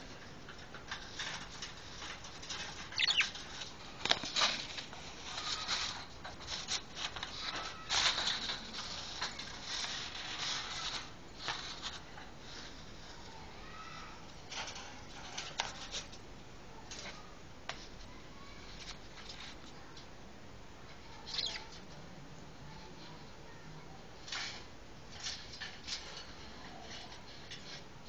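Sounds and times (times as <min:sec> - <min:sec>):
bird squeak: 0:03.0 - 0:03.4, 0:21.2 - 0:21.7.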